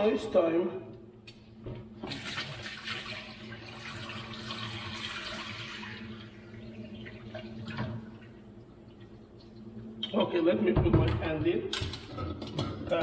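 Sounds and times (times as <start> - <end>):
water running into a sink: 2.1 - 8.3.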